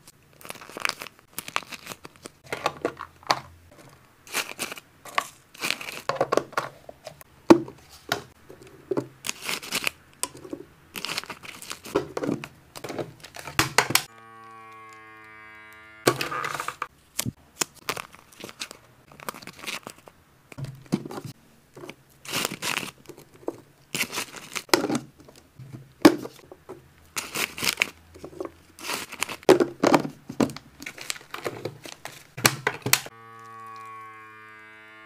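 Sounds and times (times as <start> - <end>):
snack packaging crinkling and tearing: 0.0 - 2.5, 4.2 - 6.1, 9.1 - 15.0, 17.0 - 20.6, 21.8 - 25.4, 27.1 - 29.8, 30.5 - 34.1.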